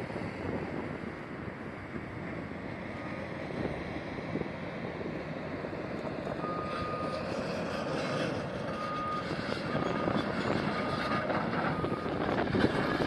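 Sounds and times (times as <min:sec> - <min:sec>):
heavy demolition machinery running: 0:05.6 - 0:13.0.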